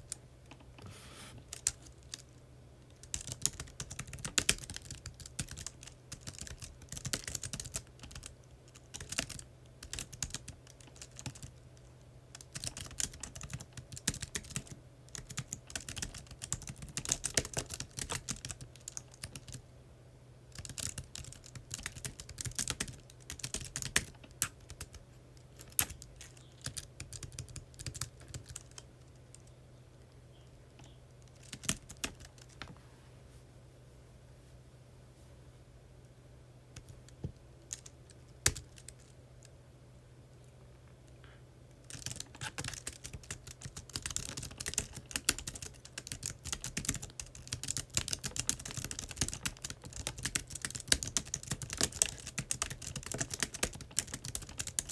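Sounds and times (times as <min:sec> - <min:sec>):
typing on computer keyboard: 0:03.0 - 0:11.6, 0:12.3 - 0:19.6, 0:20.5 - 0:25.0, 0:25.6 - 0:29.5, 0:30.8 - 0:32.5, 0:41.9 - 0:54.9.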